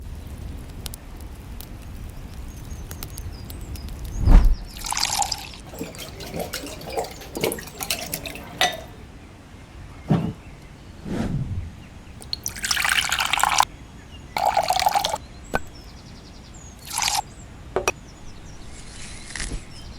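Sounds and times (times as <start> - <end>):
liquid splashing: 4.6 - 9.0, 11.8 - 13.6, 14.4 - 15.7, 16.8 - 17.2
water dripping: 4.6 - 9.0, 11.8 - 13.7, 14.4 - 15.7, 16.8 - 17.2
heavy thump: 10.1 - 10.4
kitchenware knocks and clicks: 10.1 - 10.4.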